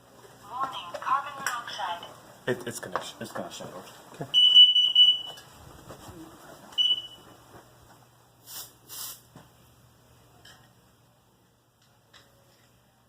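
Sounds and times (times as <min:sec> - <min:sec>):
smoke alarm beep: 0:04.3 - 0:05.5, 0:06.7 - 0:07.4.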